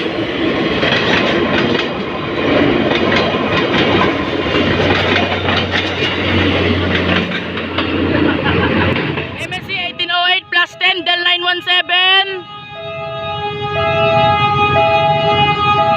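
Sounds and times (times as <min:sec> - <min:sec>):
train wheels clacking over rail joints: 0:00.0 - 0:09.5
diesel engine hum: 0:04.2 - 0:15.9.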